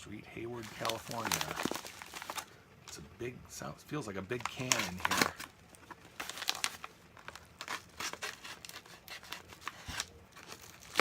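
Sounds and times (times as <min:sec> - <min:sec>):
package wrapping tearing: 0:00.6 - 0:02.5, 0:04.4 - 0:11.0.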